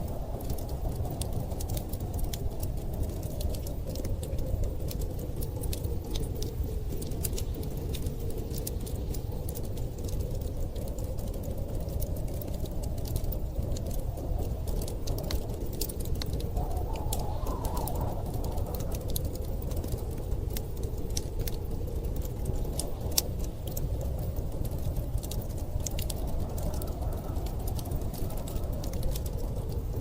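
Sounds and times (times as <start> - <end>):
storm wind howling: 0.0 - 30.0
wood fire crackling and popping: 0.0 - 30.0.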